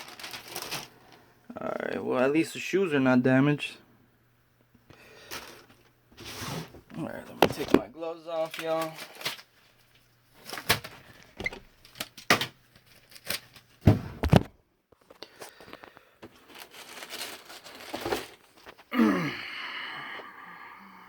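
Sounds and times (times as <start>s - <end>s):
paper rustling and crinkling: 0.0s - 1.2s, 7.4s - 18.9s.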